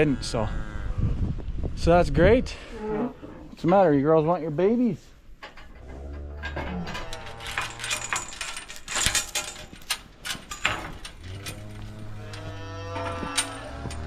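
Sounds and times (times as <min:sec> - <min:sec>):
cows mooing: 0:05.8 - 0:08.4, 0:11.1 - 0:14.0
sharp clicks and clinks: 0:06.4 - 0:14.0.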